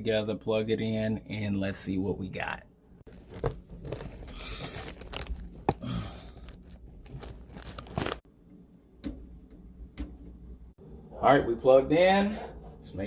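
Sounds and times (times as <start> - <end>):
rustling and crinkling: 3.1 - 8.2.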